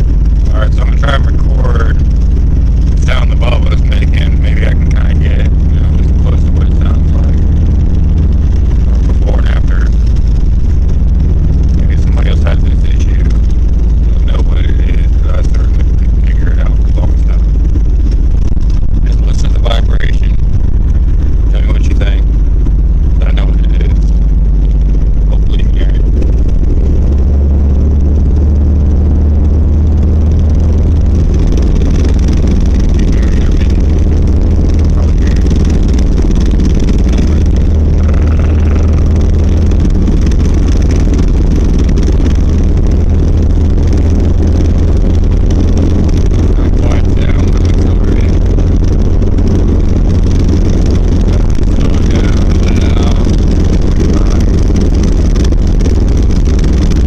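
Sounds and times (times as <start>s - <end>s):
car engine running: 0.0s - 57.0s.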